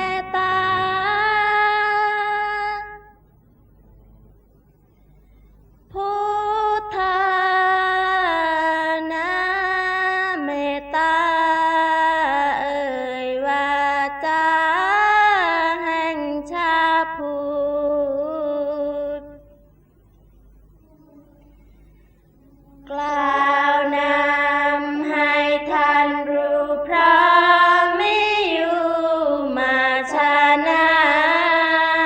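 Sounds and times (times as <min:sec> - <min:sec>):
woman singing chanted verse: 0:00.0 - 0:03.2, 0:05.8 - 0:19.8, 0:20.8 - 0:32.0.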